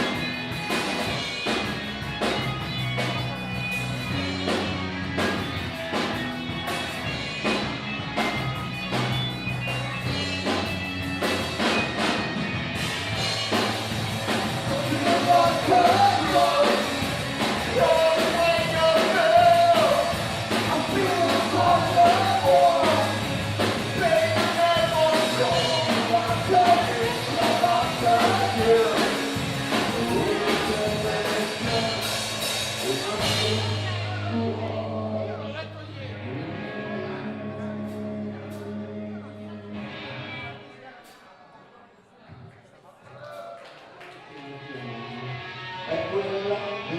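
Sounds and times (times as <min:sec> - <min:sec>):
rock band playing: 0:00.0 - 0:40.6, 0:45.1 - 0:46.9
person singing: 0:14.4 - 0:40.2.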